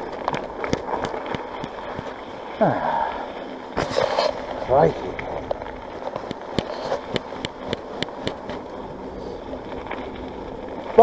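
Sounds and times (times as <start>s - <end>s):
bike sharp ticks: 0.0s - 2.3s, 3.5s - 11.0s
tyres rushing on wet trail: 0.0s - 11.0s.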